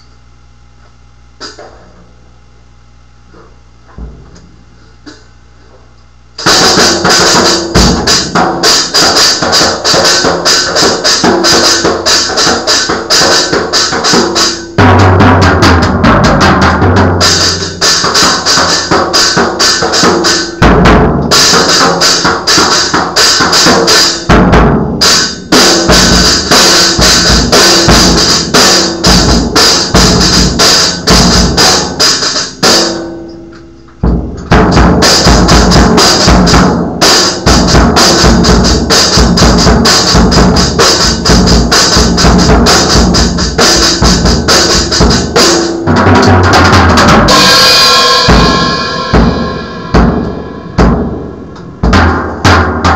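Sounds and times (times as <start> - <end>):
snare drum hits: 1.4 - 1.8, 34.4 - 51.1
bass drum hits: 3.9 - 4.7, 34.0 - 52.9
drum kit played fast: 6.4 - 33.2, 34.0 - 52.9
cymbals crashing: 6.4 - 52.9.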